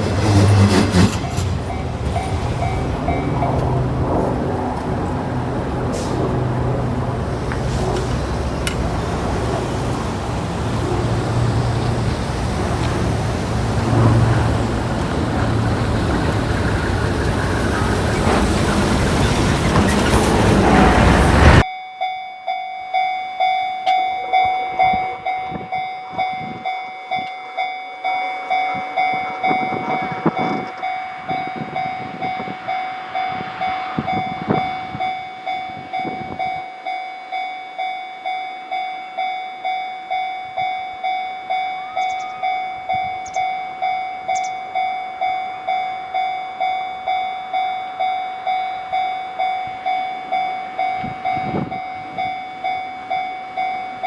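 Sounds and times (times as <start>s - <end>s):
train running past: 0.0s - 21.7s, 24.2s - 54.0s
level crossing warning bell: 0.0s - 54.0s.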